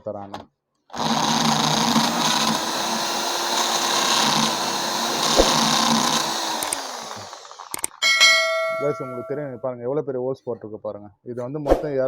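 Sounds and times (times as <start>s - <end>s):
electric drill cutting plastic: 0.9s - 8.0s.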